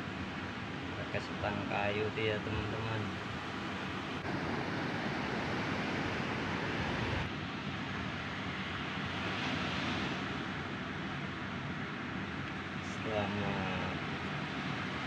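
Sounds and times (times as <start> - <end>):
wash of waves: 0.1 - 11.5
wind on microphone: 2.5 - 7.3.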